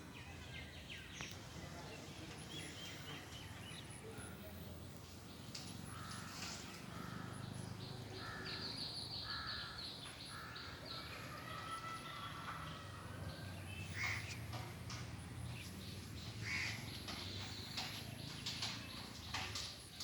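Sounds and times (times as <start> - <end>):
birds giving harsh calls: 5.4 - 19.7.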